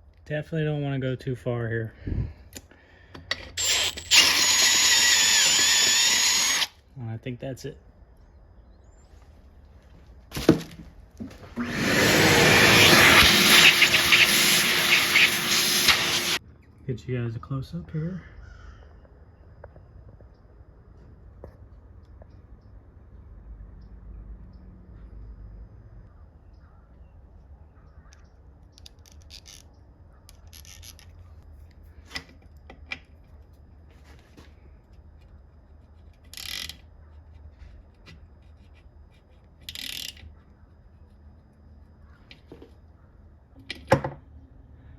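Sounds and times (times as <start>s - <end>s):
vacuum cleaner running: 11.4s - 16.4s.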